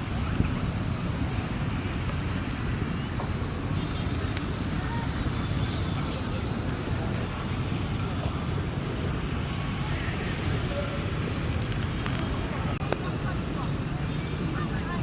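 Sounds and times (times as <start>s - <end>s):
wind buffeting microphone: 0.0s - 5.4s
faint voices: 2.7s - 15.0s.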